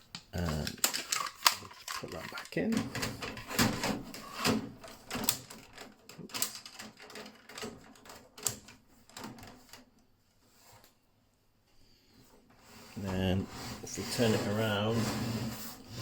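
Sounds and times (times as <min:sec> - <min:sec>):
plastic and metal clicks and knocks: 0:00.0 - 0:09.9.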